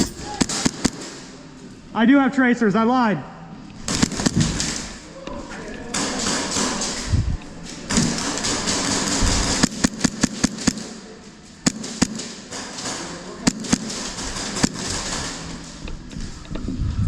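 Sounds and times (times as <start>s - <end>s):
airsoft guns firing: 0.1s - 1.5s, 3.9s - 5.1s, 5.9s - 7.1s, 7.9s - 15.8s.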